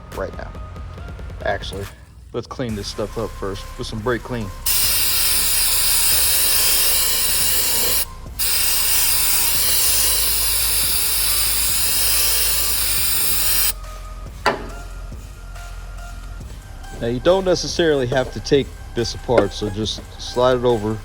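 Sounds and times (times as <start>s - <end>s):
aerosol can spraying: 4.4s - 13.8s.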